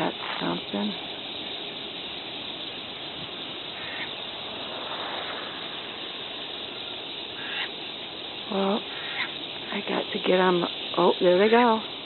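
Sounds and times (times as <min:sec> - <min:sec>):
flock of water birds chattering: 0:00.0 - 0:12.0
bird call: 0:03.5 - 0:09.8.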